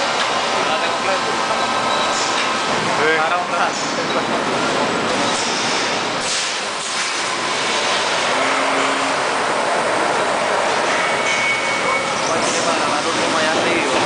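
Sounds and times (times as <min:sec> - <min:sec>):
welding line machinery din: 0:02.1 - 0:14.0
air hiss: 0:05.4 - 0:07.2.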